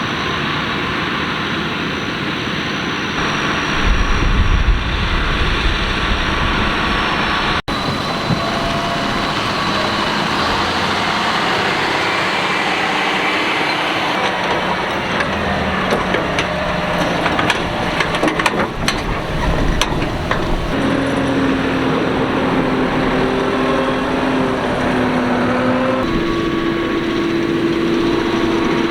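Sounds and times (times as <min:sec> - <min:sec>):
tractor diesel engines running: 0:00.0 - 0:28.9
harvesting machinery clatter: 0:07.7 - 0:28.9.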